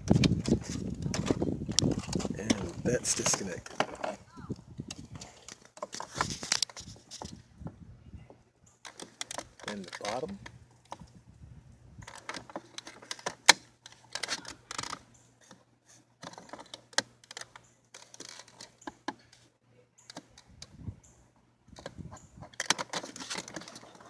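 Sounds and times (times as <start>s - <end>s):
plastic trim clicks and rustling: 8.8s - 11.0s, 12.0s - 15.6s, 16.2s - 19.4s, 21.8s - 24.0s.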